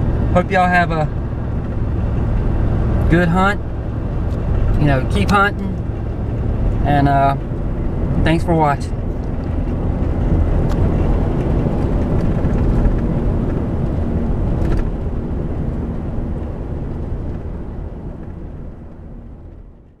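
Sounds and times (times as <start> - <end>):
wind rumble on microphone: 0.0 - 20.0.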